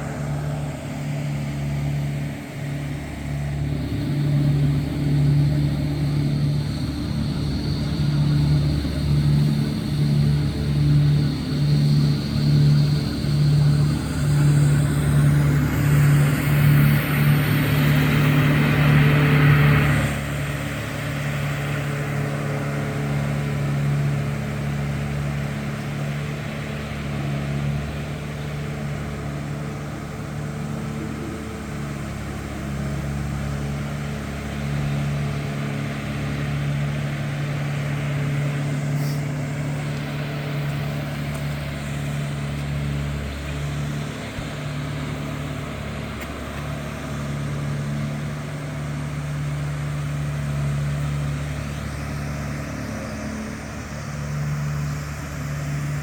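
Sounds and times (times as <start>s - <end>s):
vehicle engine humming: 0.0s - 56.0s
hiss: 38.3s - 42.0s.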